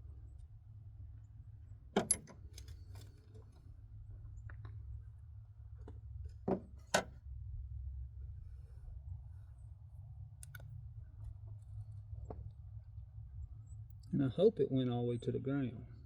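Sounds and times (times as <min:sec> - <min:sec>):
tools knocking and clicking: 0:02.0 - 0:02.7.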